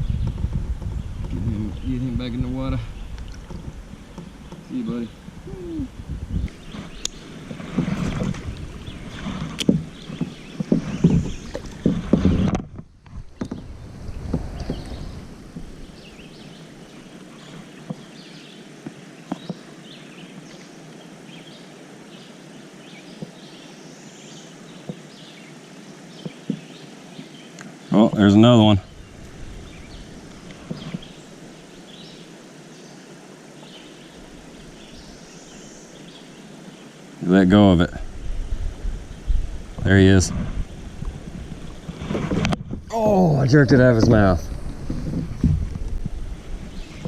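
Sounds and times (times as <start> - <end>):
water sloshing: 6.5 - 18.0.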